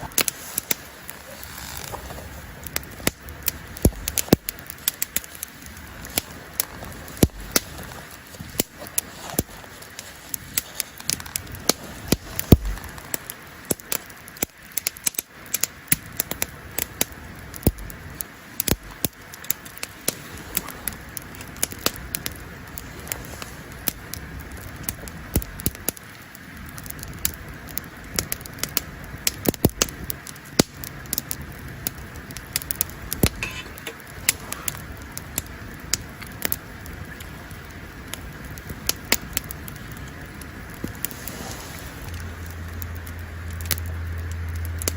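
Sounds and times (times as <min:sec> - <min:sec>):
campfire crackling and popping: 0:00.0 - 0:44.9
low hiss of fire: 0:00.0 - 0:44.9.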